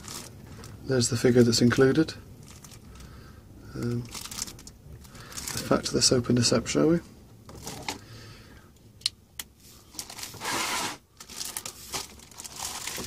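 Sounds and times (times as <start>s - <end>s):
plastic bag tearing: 0.0s - 0.4s, 4.0s - 5.7s, 9.9s - 13.0s
plastic bag crinkling: 0.0s - 0.8s, 2.4s - 3.1s, 3.8s - 6.0s, 9.9s - 13.0s.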